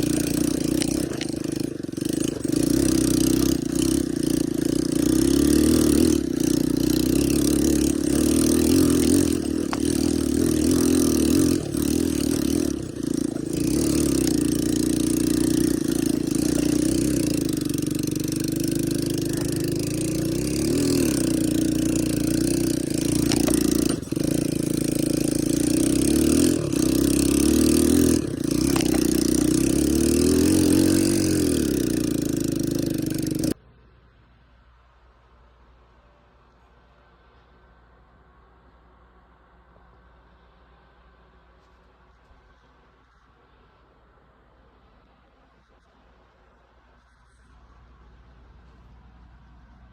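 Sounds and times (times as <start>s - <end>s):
atv engine revving: 0.0s - 33.6s.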